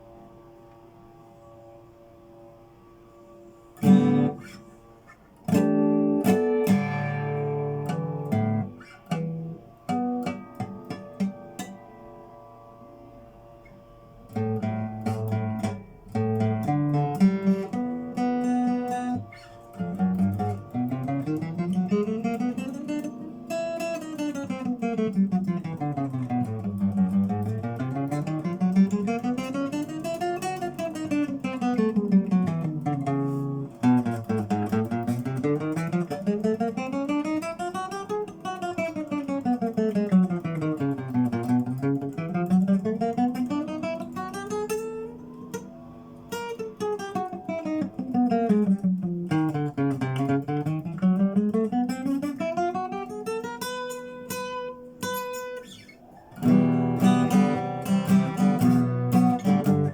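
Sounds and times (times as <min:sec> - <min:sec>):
acoustic guitar plucked runs: 0:00.0 - 0:59.9.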